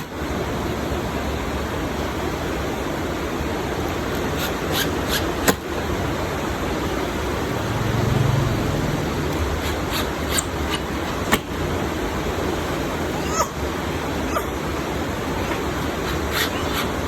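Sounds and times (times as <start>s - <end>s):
low hum: 7.1s - 11.2s.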